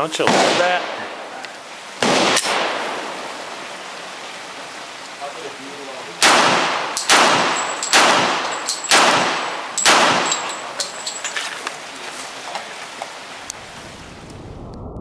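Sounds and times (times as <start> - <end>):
pistol shots echoing: 6.2 - 11.0
metallic pings: 9.8 - 11.5.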